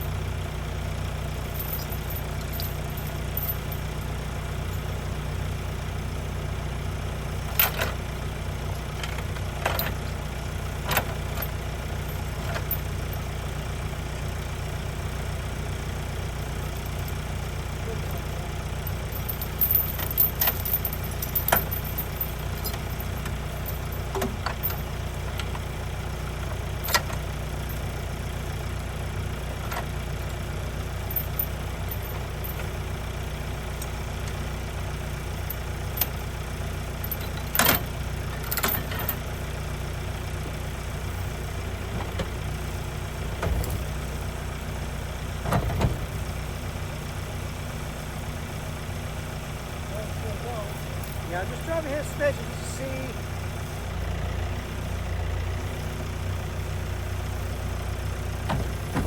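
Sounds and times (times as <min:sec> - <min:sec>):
diesel excavator engine running: 0:00.0 - 0:59.0
sharp clanks and knocks: 0:07.5 - 0:08.0, 0:09.0 - 0:10.2, 0:19.2 - 0:25.6, 0:58.4 - 0:59.0.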